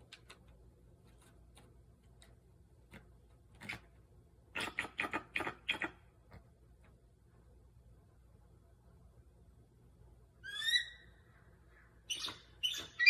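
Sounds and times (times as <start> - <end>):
eagle calling: 10.4 - 11.4, 12.1 - 13.0.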